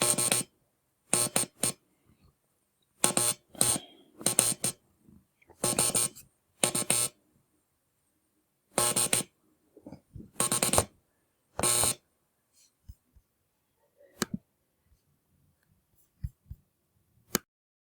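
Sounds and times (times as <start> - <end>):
morse code buzzing tones: 0.0 - 0.5, 1.1 - 1.8, 3.0 - 4.8, 5.6 - 7.2, 8.8 - 9.3, 10.4 - 10.9, 11.6 - 12.0.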